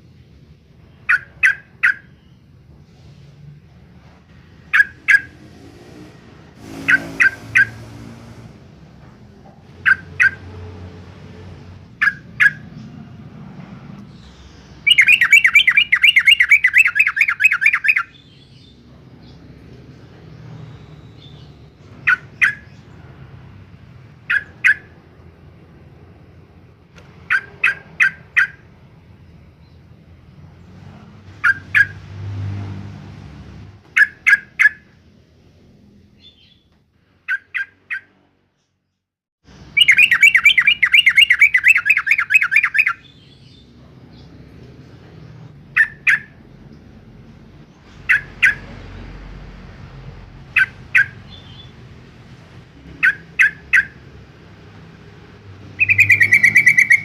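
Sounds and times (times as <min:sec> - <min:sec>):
bird chattering: 0:00.9 - 0:02.4, 0:04.6 - 0:05.4, 0:09.7 - 0:10.5, 0:11.9 - 0:12.9, 0:14.2 - 0:18.6, 0:21.2 - 0:22.9, 0:24.2 - 0:25.0, 0:27.2 - 0:28.7, 0:31.4 - 0:32.0, 0:33.9 - 0:34.9, 0:39.8 - 0:43.6, 0:45.6 - 0:46.4, 0:47.9 - 0:48.8, 0:50.4 - 0:51.8, 0:52.9 - 0:54.1, 0:55.6 - 0:57.0
bird calling quick notes: 0:14.8 - 0:18.1, 0:39.8 - 0:43.0, 0:55.7 - 0:57.0.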